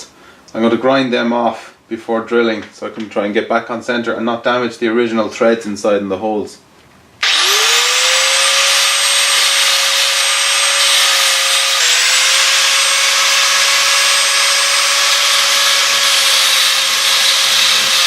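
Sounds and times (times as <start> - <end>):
high-speed grinder grinding metal: 7.2 - 18.0.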